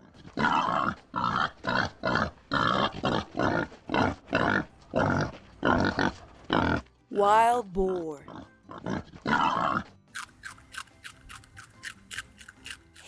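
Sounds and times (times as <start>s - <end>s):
wild boar grunting: 0.0s - 6.9s, 8.2s - 9.9s.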